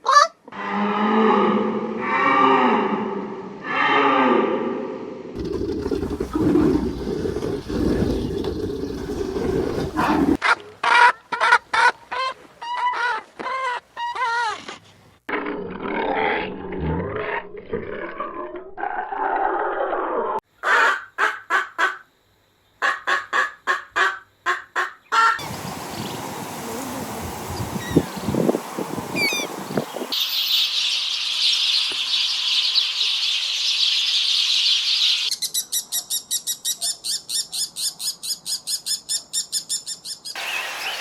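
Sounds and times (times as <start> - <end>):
poultry calling: 27.7 - 30.6.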